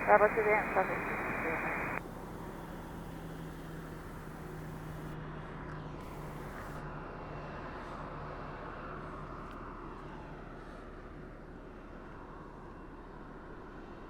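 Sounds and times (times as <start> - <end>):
distant jet engine noise: 0.0 - 5.2
steady low hum: 0.0 - 5.2.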